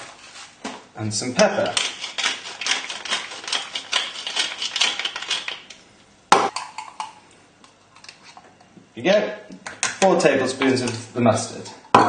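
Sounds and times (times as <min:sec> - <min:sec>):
pepper grinding in a mortar: 0:01.4 - 0:05.8.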